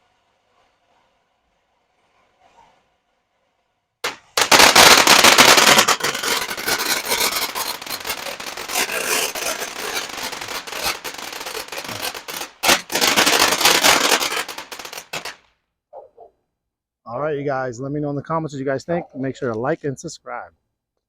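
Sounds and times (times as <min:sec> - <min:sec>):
fireworks crackling and popping: 0:00.0 - 0:15.6.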